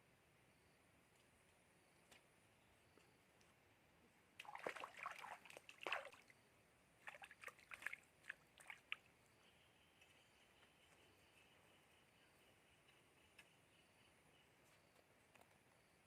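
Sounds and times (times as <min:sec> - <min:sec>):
water splashing and sloshing: 0:04.4 - 0:06.4, 0:07.0 - 0:09.1.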